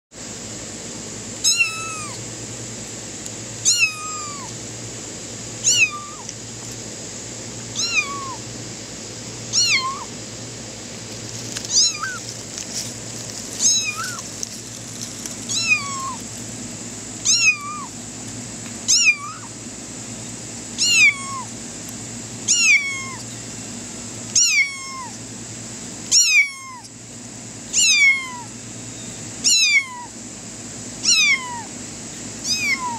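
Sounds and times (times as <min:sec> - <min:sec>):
kitten meowing: 0:01.4 - 0:02.2, 0:03.6 - 0:04.5, 0:05.6 - 0:06.3, 0:07.7 - 0:08.4, 0:09.5 - 0:10.1, 0:11.7 - 0:12.2, 0:13.6 - 0:14.2, 0:15.5 - 0:16.2, 0:17.2 - 0:18.0, 0:18.9 - 0:19.5, 0:20.8 - 0:21.5, 0:22.4 - 0:23.3, 0:24.4 - 0:25.2, 0:26.1 - 0:26.9, 0:27.7 - 0:28.5, 0:29.4 - 0:30.1, 0:31.0 - 0:31.7, 0:32.4 - 0:32.9.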